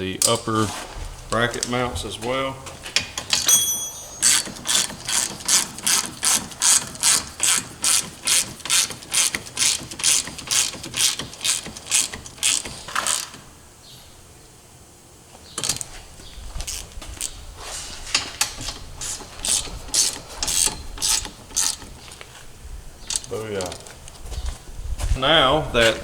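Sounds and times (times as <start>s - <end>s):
ratchet wrench clicking: 3.0s - 13.4s, 18.1s - 22.2s.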